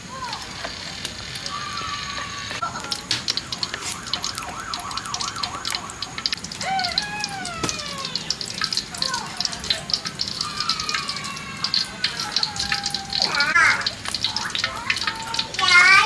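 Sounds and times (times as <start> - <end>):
steady crackling: 0.0 - 16.0
child wailing: 1.4 - 3.0, 6.6 - 9.5, 10.2 - 16.0.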